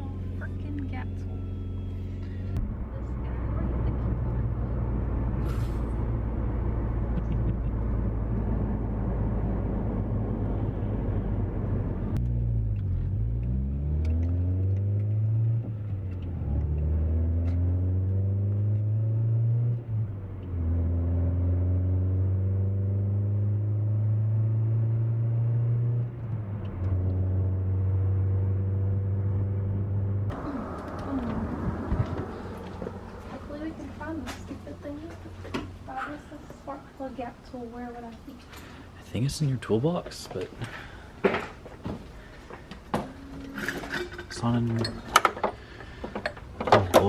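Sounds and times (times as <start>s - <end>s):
car engine accelerating: 0.0s - 36.8s.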